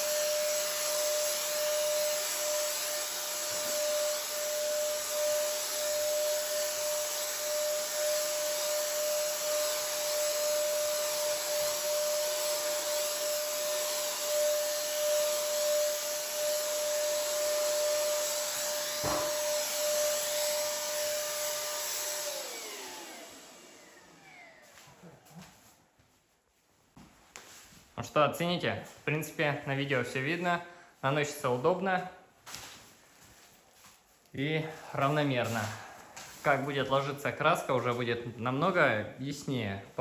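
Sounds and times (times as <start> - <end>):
paint sprayer motor whining: 0.0 - 25.5.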